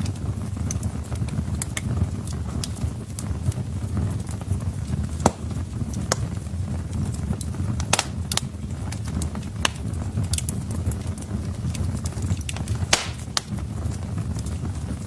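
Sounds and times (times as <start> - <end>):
wood fire crackling and popping: 0.0 - 15.0.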